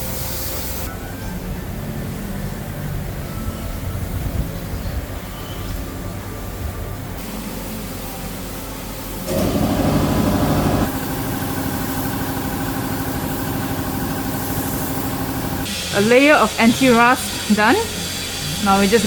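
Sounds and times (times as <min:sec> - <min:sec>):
motor running: 0:09.3 - 0:19.0.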